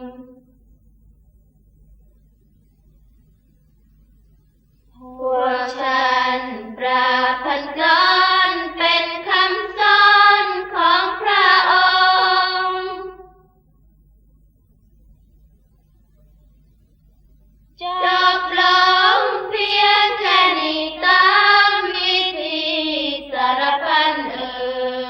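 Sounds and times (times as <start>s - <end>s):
person chanting melismatic lines: 5.0s - 13.4s, 17.8s - 25.0s.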